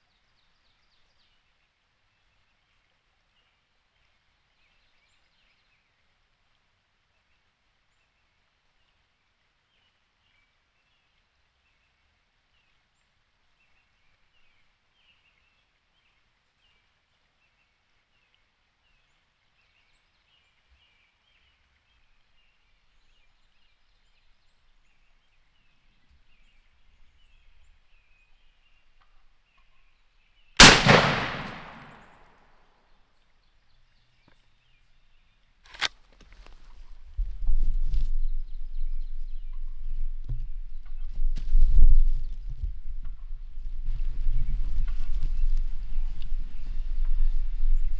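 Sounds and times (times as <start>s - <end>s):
sharp crack: 30.6s - 32.2s
shotgun blast echoing: 30.6s - 32.2s
songbirds chirping: 30.6s - 32.2s.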